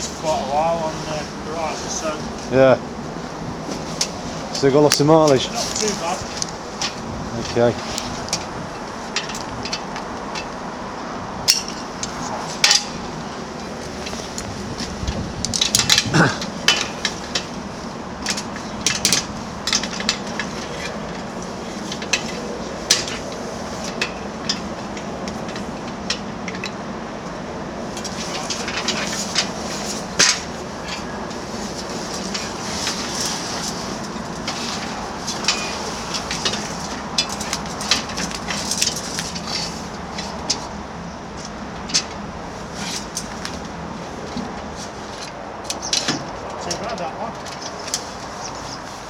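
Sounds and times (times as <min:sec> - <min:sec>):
steady background hum: 0:00.0 - 0:49.0
metal ladder sections clinking: 0:03.7 - 0:10.6, 0:11.4 - 0:48.8.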